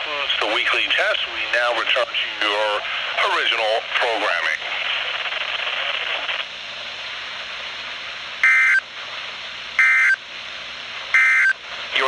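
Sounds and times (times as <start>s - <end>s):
radio static: 0.0s - 9.2s, 11.2s - 12.0s
buzzy digital data tone: 8.4s - 8.8s.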